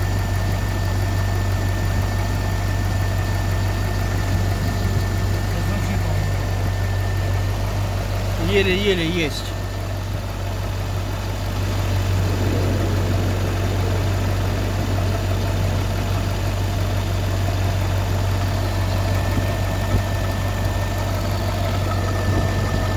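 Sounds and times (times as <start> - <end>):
car engine idling: 0.0 - 22.9
faint engine knock: 9.6 - 22.9.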